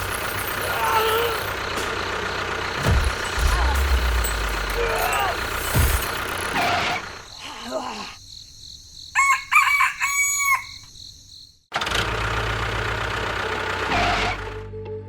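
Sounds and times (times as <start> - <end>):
machine hum with low drone: 0.0 - 7.3
rooster crowing: 9.0 - 11.0.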